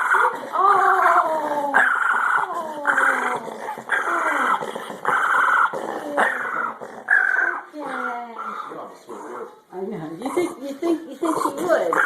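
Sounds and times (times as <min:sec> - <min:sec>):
dog whining: 0:00.0 - 0:09.6.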